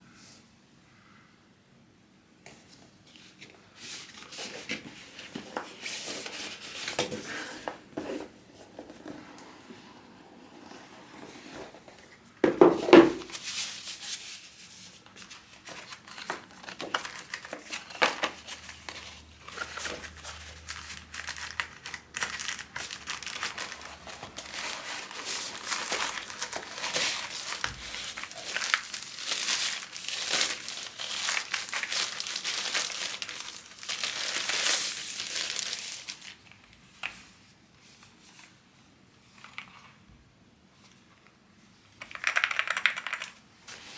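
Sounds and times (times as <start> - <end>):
wrapping crinkling: 13.2 - 36.6
packaging tearing: 15.7 - 36.3.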